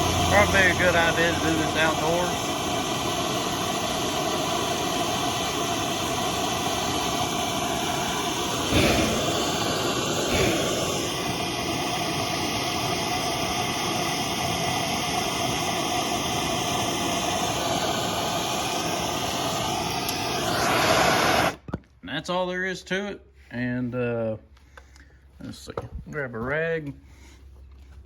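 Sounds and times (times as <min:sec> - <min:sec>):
propane torch hissing: 0:00.0 - 0:21.7.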